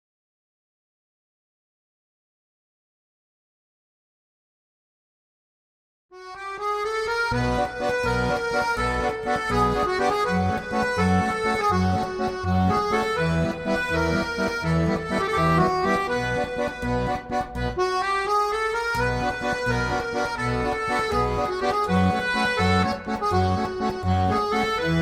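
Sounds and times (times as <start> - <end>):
accordion melody: 6.1 - 25.0
low bass notes pulsing: 10.4 - 18.0.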